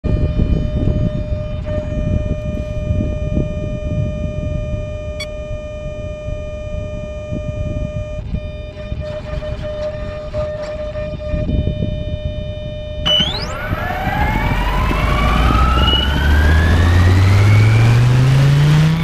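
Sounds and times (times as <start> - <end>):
rc helicopter whine: 0.0 - 19.0
wind buffeting microphone: 0.0 - 19.0.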